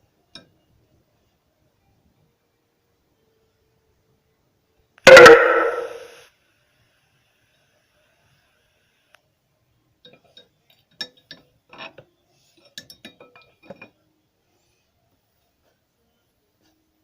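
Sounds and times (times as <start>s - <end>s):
light metallic clinks and taps: 10.0s - 14.0s.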